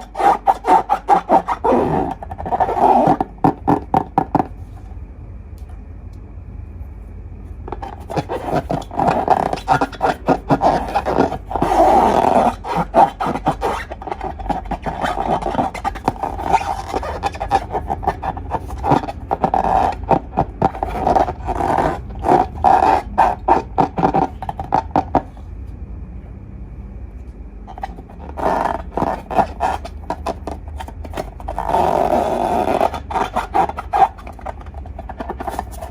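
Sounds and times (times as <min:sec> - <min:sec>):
slime and balloons squeezed by hand: 0:00.0 - 0:04.6, 0:07.7 - 0:25.3.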